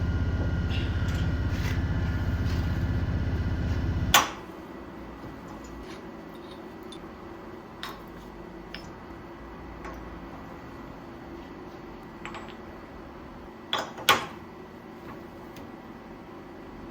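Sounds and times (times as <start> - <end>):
quiet steady hum: 0.0 - 4.2
machine clunk shutting off: 0.0 - 4.4
workshop machine humming: 0.0 - 4.4.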